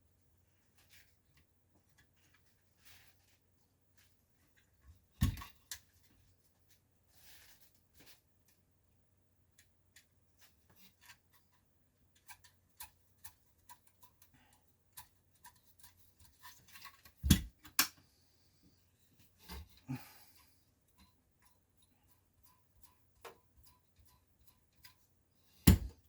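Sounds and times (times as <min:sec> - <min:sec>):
small parts and tools clicking: 0:09.5 - 0:18.0, 0:19.6 - 0:25.7.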